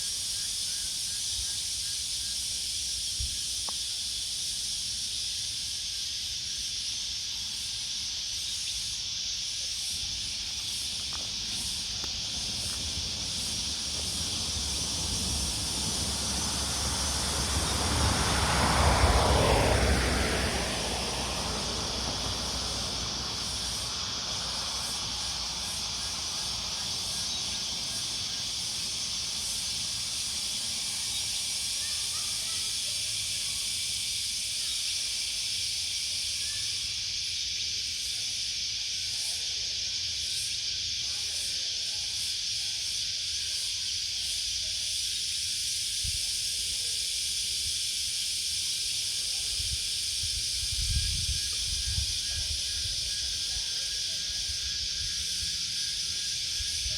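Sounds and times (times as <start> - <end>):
high insect chorus: 0.0 - 56.9
vehicle passing on road: 10.1 - 32.8, 49.6 - 56.9.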